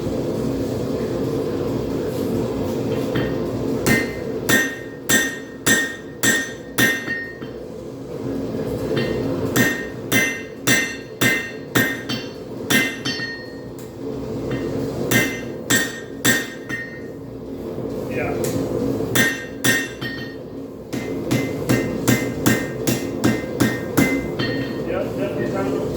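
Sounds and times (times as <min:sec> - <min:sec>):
hammer striking spike on anvil: 0:03.2 - 0:07.5, 0:09.0 - 0:13.5, 0:14.5 - 0:17.1, 0:19.2 - 0:20.4, 0:21.0 - 0:24.7.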